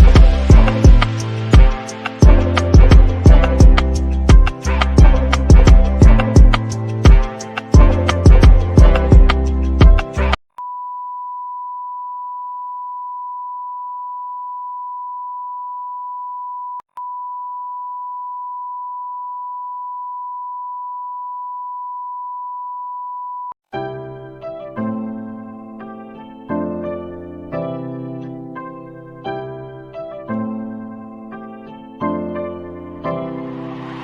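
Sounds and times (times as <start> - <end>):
music: 0.0 - 10.4, 23.7 - 34.0
electric piano music: 23.8 - 34.0.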